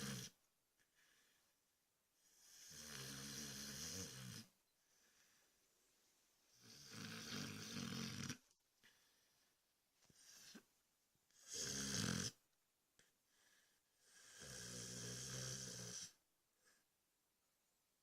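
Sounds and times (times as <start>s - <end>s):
dog snoring: 0.0s - 0.4s, 2.2s - 4.5s, 6.5s - 8.4s, 11.3s - 12.4s, 14.0s - 16.2s
faint breathing: 0.8s - 1.7s, 4.8s - 5.9s, 8.8s - 10.7s, 13.2s - 14.2s.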